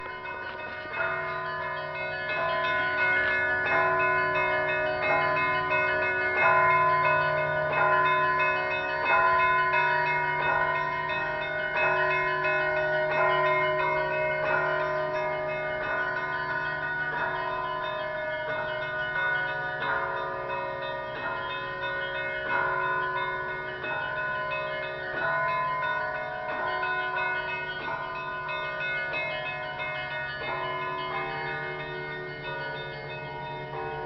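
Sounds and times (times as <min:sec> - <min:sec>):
church bells ringing: 0:00.0 - 0:34.0.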